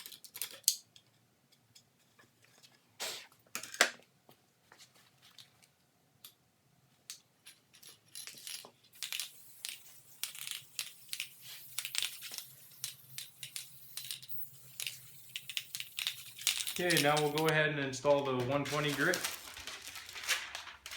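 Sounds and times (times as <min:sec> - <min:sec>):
paper crinkling and rustling: 0:16.5 - 0:20.9.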